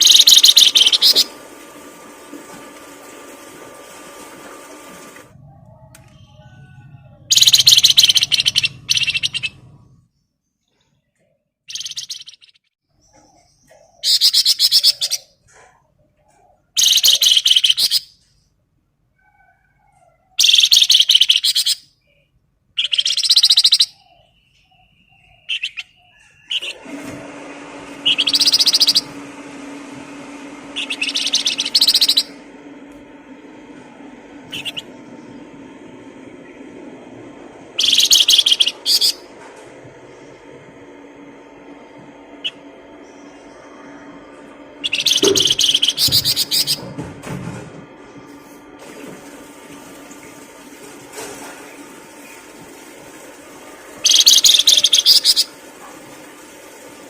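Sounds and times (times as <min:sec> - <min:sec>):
songbird trilling: 0:00.0 - 0:01.3, 0:06.2 - 0:09.6, 0:11.7 - 0:15.3, 0:16.8 - 0:18.1, 0:20.4 - 0:21.8, 0:22.8 - 0:26.7, 0:28.1 - 0:29.1, 0:30.8 - 0:32.4, 0:37.8 - 0:39.2, 0:44.8 - 0:46.8, 0:54.0 - 0:55.5
steady low hum: 0:27.7 - 0:54.7.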